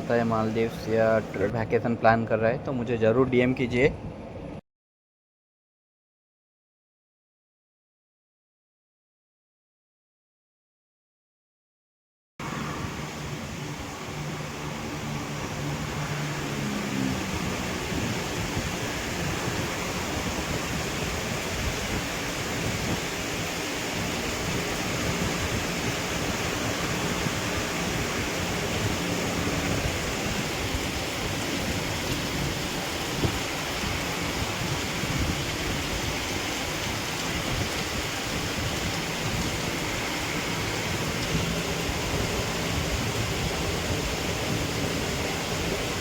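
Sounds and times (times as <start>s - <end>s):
heavy rain pouring: 0.0s - 1.7s, 12.4s - 46.0s.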